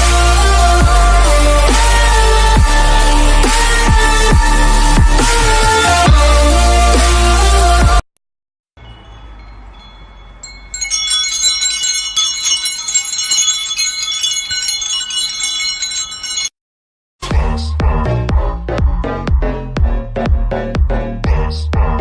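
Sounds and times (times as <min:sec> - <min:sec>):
chimes tinkling: 0:08.8 - 0:16.6.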